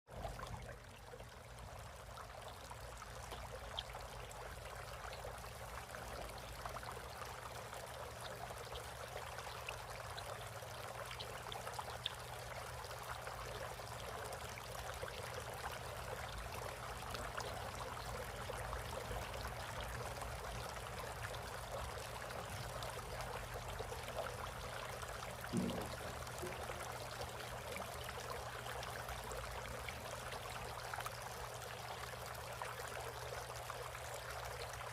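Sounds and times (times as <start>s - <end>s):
fountain water trickling and splashing: 0.1s - 34.9s
brief thump: 25.5s - 26.6s.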